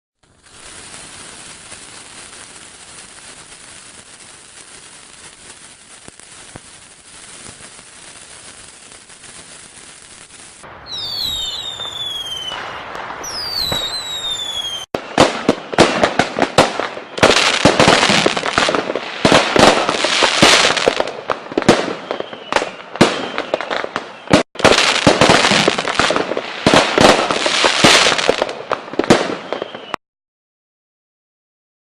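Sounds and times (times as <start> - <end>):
firework bangs and crackling: 0.2 - 30.0
whistling rockets: 4.9 - 30.0.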